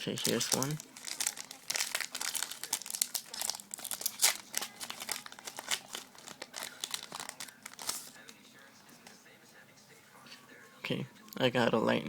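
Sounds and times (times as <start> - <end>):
plastic packaging crinkling and tearing: 0.0 - 8.4.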